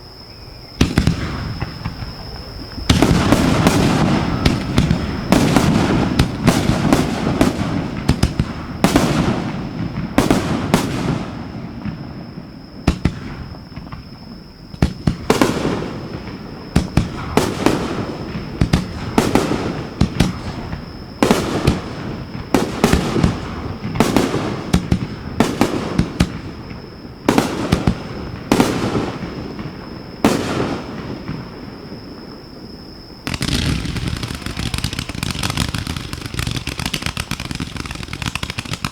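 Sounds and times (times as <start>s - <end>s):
fireworks bangs: 0.7s - 38.9s
fireworks crackle and rumble: 0.7s - 38.9s.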